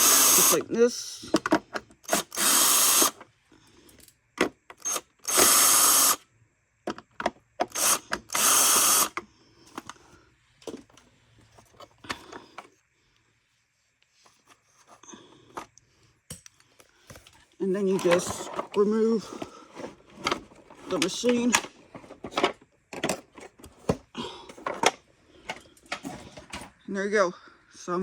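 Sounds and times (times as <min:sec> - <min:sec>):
power drill backing out screws: 0:00.0 - 0:00.7, 0:02.0 - 0:03.2, 0:04.7 - 0:06.2, 0:07.6 - 0:09.2, 0:17.8 - 0:21.6
plastic parts clicking and rattling: 0:16.3 - 0:26.7.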